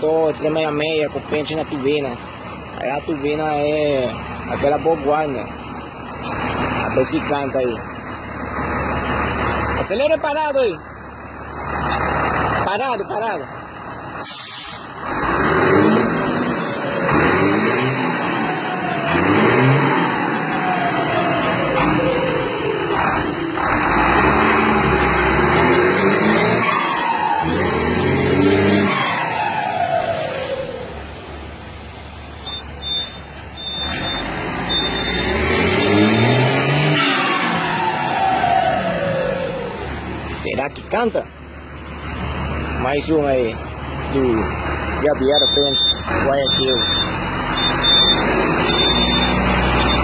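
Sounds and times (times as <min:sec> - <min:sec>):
diesel truck engine revving: 0:00.0 - 0:50.0
short hiss: 0:14.2 - 0:14.9
turbo whistle: 0:32.4 - 0:35.2, 0:45.4 - 0:50.0.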